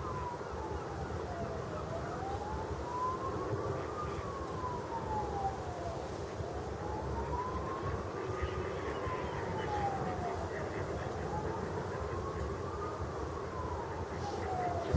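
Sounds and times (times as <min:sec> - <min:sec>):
emergency vehicle siren wailing: 0:00.0 - 0:14.9.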